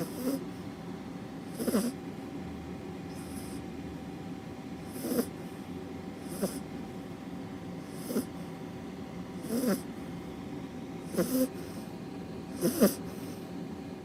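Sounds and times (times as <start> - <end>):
puppy snoring: 0.0 - 0.7, 1.4 - 2.2, 3.1 - 3.7, 4.8 - 6.8, 7.8 - 8.6, 9.4 - 10.1, 11.0 - 13.5.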